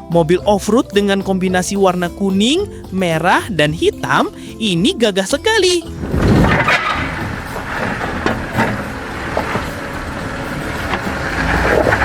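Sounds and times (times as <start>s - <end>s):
vehicle engine rumble: 5.4s - 12.0s.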